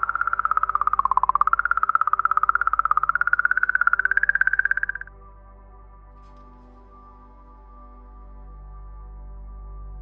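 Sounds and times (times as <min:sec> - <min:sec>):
high electronic tone pulsing: 0:00.0 - 0:05.1.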